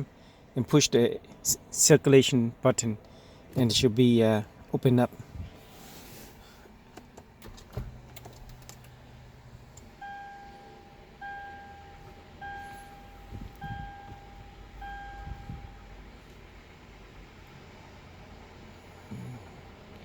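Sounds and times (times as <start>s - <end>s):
dashboard warning chime beeping: 9.8s - 16.2s
brief low hum: 10.2s - 16.4s.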